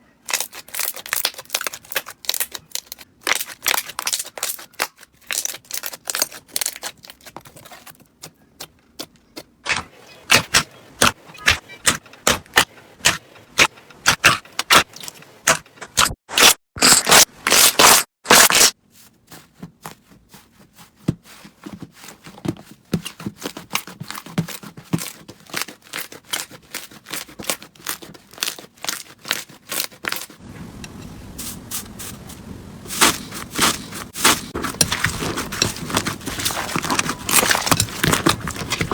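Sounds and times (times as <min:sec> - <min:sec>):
crunchy slime crackling: 0:00.2 - 0:08.0, 0:09.7 - 0:18.8, 0:25.1 - 0:30.4, 0:32.9 - 0:38.9.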